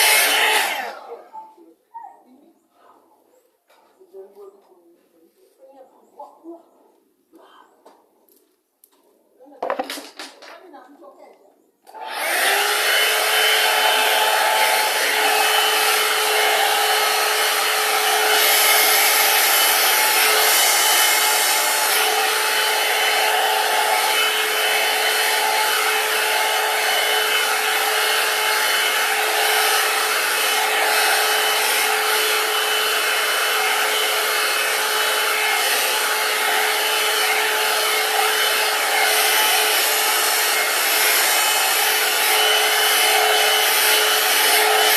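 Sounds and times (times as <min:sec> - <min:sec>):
hair dryer running: 0:00.0 - 0:01.5, 0:11.9 - 0:44.9.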